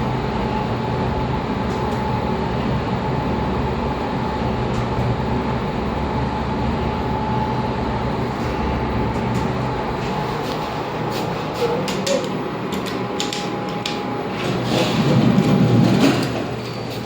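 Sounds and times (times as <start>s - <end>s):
lift car travelling down: 8.2s - 17.0s.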